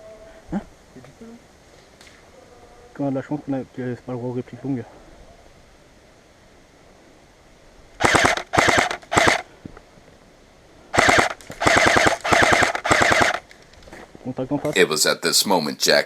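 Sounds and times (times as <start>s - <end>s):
airsoft gun firing bursts: 8.0s - 9.4s, 11.0s - 13.4s
faint background hiss: 13.8s - 16.0s.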